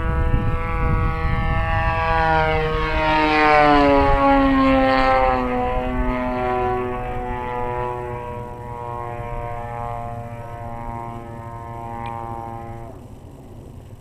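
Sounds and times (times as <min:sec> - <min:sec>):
model plane engine in flight: 0:00.0 - 0:14.0.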